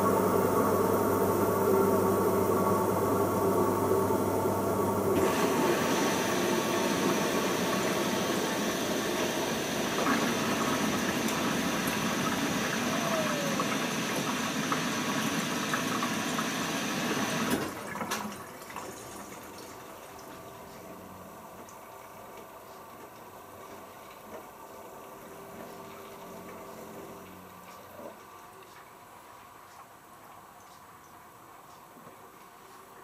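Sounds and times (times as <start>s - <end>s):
water rushing through inlet valve: 0.0s - 22.0s.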